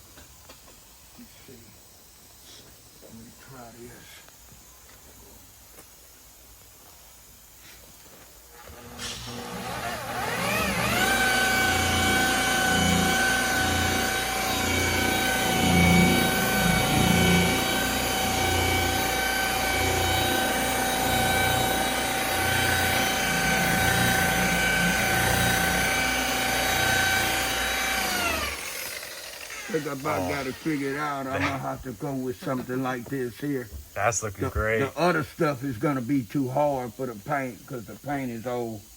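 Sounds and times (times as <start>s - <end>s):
electric car buffer whining: 8.5s - 31.6s.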